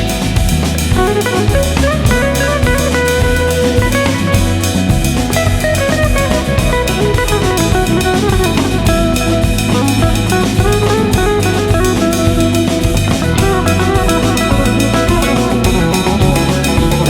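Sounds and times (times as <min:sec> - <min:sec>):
drum kit beat: 0:00.0 - 0:17.0
guitar: 0:00.0 - 0:17.0.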